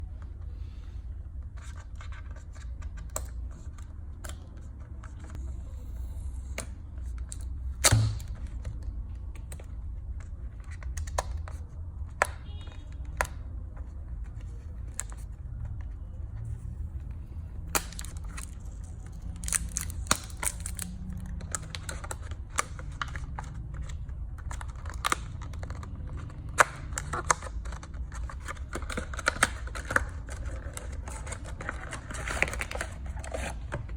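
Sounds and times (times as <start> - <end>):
packaging being opened: 17.6 - 33.9.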